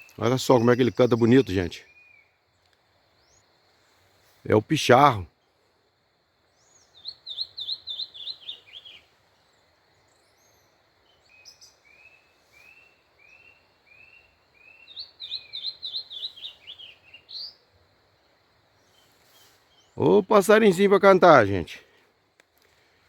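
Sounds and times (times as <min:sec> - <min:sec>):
bird singing sharp repeated notes: 0:00.0 - 0:02.4, 0:06.6 - 0:09.1, 0:10.1 - 0:17.7.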